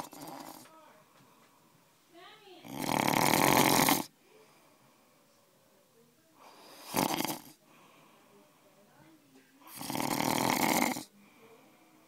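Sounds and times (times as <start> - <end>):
quiet breathing: 0.0 - 2.6, 4.0 - 9.9, 10.9 - 12.0
man snoring loudly: 2.7 - 4.1, 6.8 - 7.5, 9.7 - 11.0.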